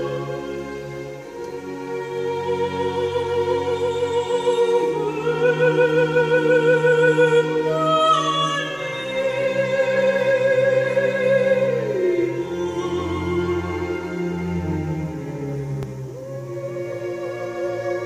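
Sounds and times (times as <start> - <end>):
operatic soprano singing: 0.0 - 18.0
orchestral accompaniment: 0.0 - 18.0.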